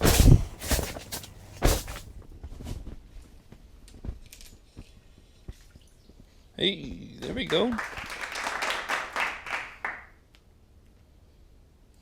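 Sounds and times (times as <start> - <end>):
knocks and clicks of gear: 0.0 - 2.1.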